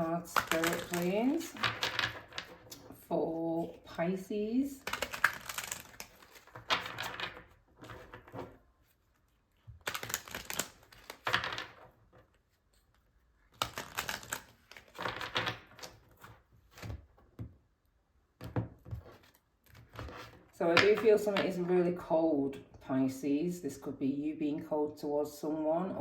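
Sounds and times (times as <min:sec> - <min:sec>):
cards being shuffled: 0:00.0 - 0:03.0, 0:04.8 - 0:11.9, 0:12.8 - 0:17.0.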